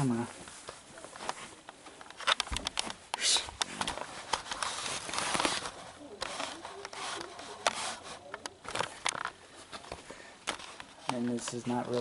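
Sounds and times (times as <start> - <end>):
handling rustling: 0.1 - 12.0
sharp clicks and knocks: 1.6 - 4.8.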